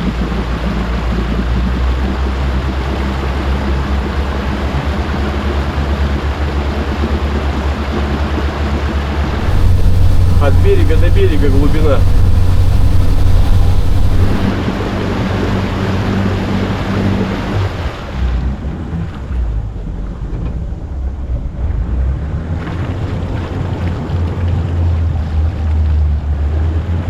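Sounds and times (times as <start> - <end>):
vehicle engine droning: 9.3 - 14.6.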